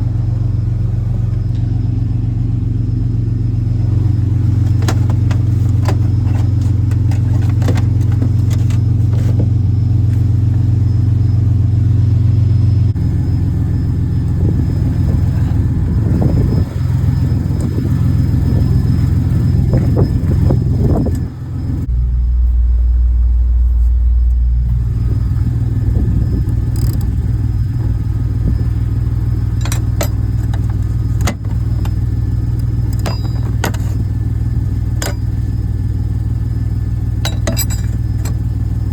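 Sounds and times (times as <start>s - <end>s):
motor vehicle engine running: 0.0s - 38.9s
light clicks and jingles: 29.6s - 34.1s, 37.2s - 38.5s.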